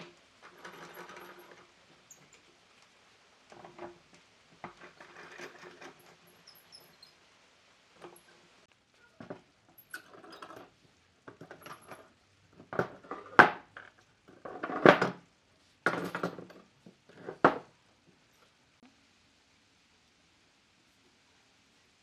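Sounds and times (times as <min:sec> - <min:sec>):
hard objects clattering: 0:00.0 - 0:02.5, 0:03.4 - 0:06.9, 0:11.3 - 0:15.3, 0:15.9 - 0:17.7.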